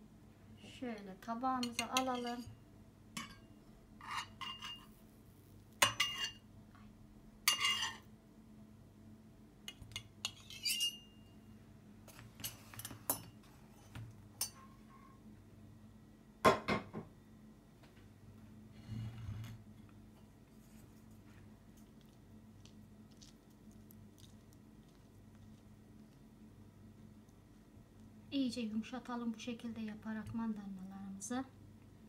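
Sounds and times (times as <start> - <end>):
utensil clinking on plate and pan: 1.6 - 2.5, 3.2 - 4.8, 5.8 - 6.4, 7.5 - 8.0.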